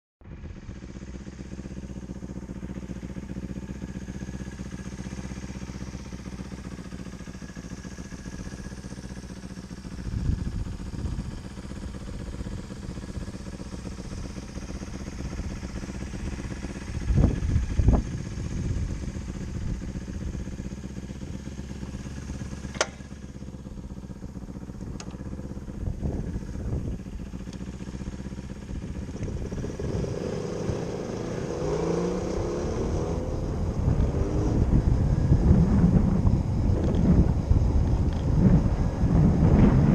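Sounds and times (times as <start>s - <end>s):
low rumbles: 0.2s - 39.9s
electric motorcycle humming: 0.4s - 39.9s
sharp clicks: 22.7s - 23.0s.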